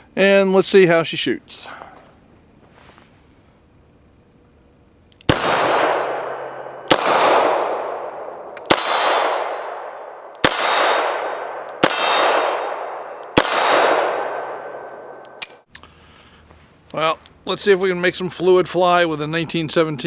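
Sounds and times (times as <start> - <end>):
steel target ringing: 5.3 - 15.4.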